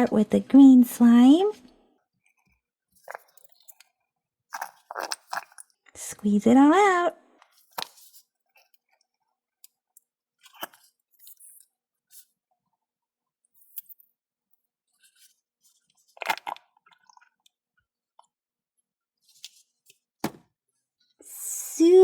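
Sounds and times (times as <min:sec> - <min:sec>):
slime squelching and crackling: 0:04.5 - 0:05.8.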